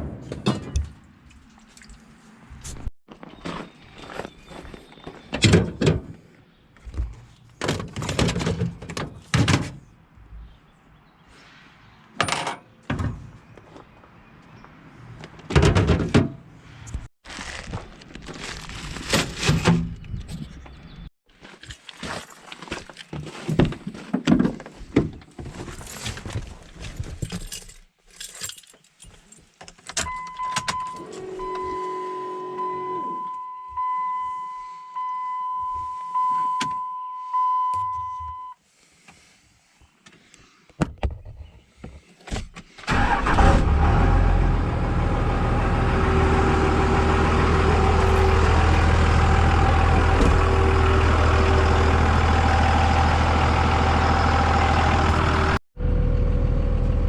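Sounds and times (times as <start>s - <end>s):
handling clicks and rustling: 17.5s - 31.2s
keys jangling: 27.3s - 29.4s.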